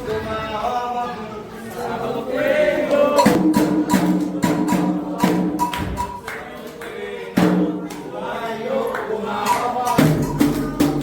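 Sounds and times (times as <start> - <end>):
chant singing: 0.0 - 11.0
hand drums: 3.2 - 6.3, 9.4 - 11.0.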